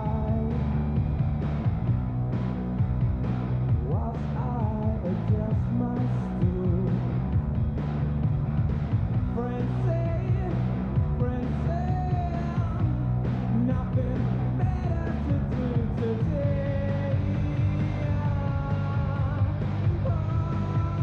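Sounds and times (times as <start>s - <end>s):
heavy bass: 0.0s - 21.0s
rock music: 0.0s - 21.0s
steady drum beat: 0.0s - 21.0s.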